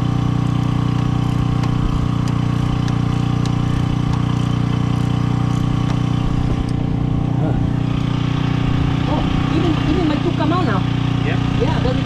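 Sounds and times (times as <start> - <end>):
machine engine drone: 0.0 - 12.0.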